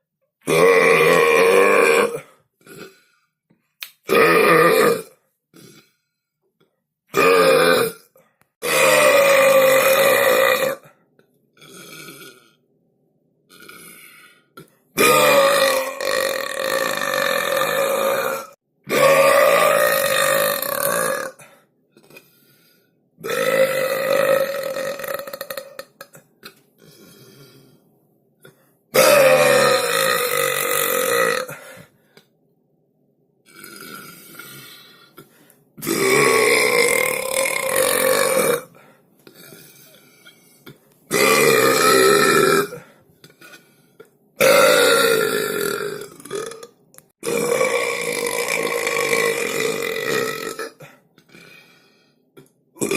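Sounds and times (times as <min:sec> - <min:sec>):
person belching: 0:00.4 - 0:03.0, 0:04.1 - 0:05.9, 0:07.1 - 0:10.9, 0:11.6 - 0:12.6, 0:14.6 - 0:22.2, 0:23.2 - 0:26.6, 0:28.9 - 0:31.7, 0:33.5 - 0:34.6, 0:35.8 - 0:39.9, 0:41.1 - 0:43.6, 0:44.4 - 0:50.9.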